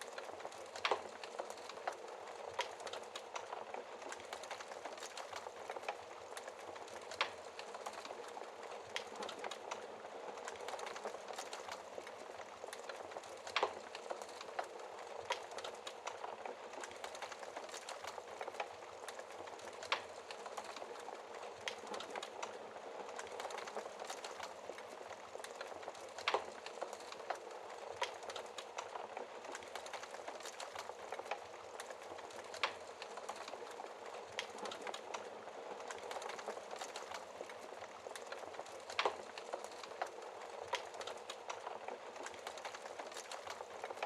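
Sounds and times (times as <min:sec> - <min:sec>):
wood fire crackling and popping: 0:00.0 - 0:44.0.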